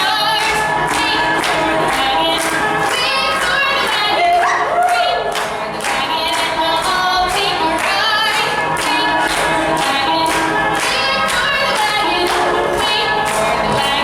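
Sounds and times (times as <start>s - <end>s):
voices singing together over a beat: 0.0s - 14.0s.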